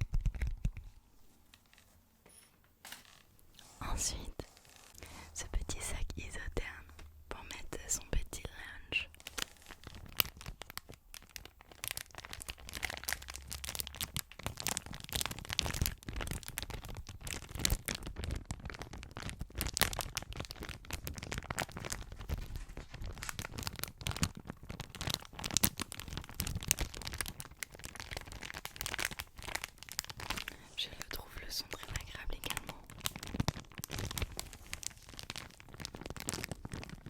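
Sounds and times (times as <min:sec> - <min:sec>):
lunch bag crinkling: 0:08.6 - 0:37.0.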